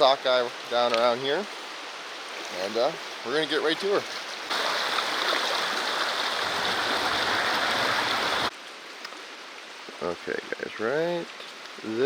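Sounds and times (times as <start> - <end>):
river water rushing: 1.7 - 8.5.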